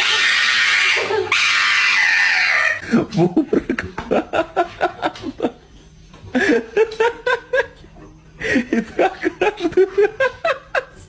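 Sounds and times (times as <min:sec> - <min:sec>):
person laughing: 0:02.8 - 0:05.6, 0:08.4 - 0:11.0.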